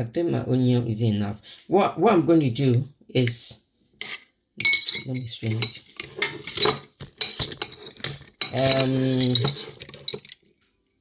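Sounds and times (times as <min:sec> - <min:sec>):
metal utensil clinking on glass: 0:04.1 - 0:10.5.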